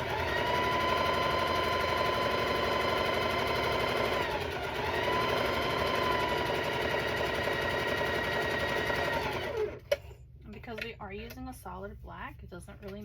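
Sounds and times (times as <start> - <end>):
sewing machine running: 0.0 - 9.8.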